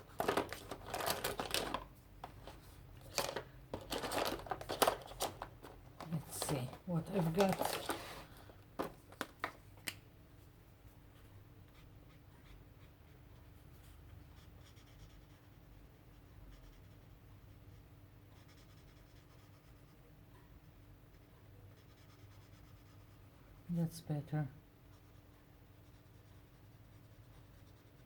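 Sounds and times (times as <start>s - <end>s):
marker scratching on paper: 11.7s - 17.1s, 18.4s - 20.0s, 21.1s - 23.2s.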